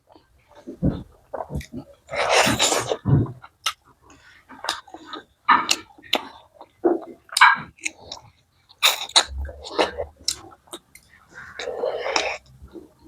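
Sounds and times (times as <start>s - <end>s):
chewing with wet mouth clicks: 4.6s - 12.5s.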